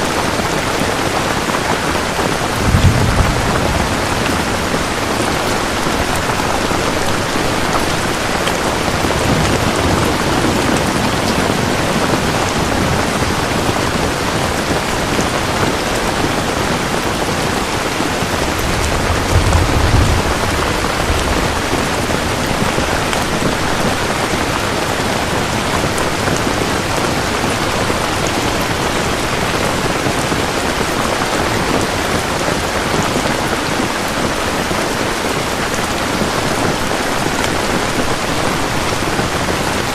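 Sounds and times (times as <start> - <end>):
dense rainfall: 0.0 - 39.9
low rumble: 2.5 - 6.6, 18.4 - 23.2.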